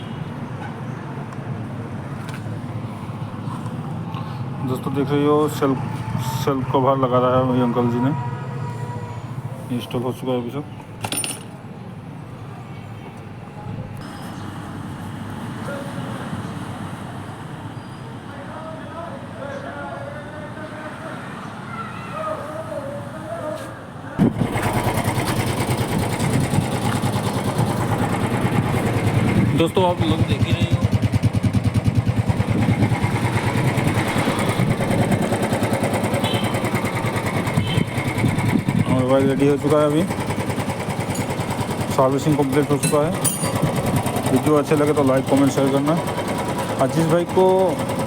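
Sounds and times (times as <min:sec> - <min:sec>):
short clatter: 0:11.0 - 0:11.6
motor vehicle rumbling: 0:24.0 - 0:48.0.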